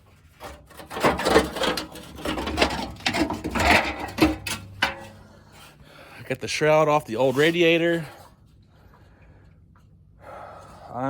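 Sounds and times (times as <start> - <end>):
rattling and scraping: 0.0 - 5.8.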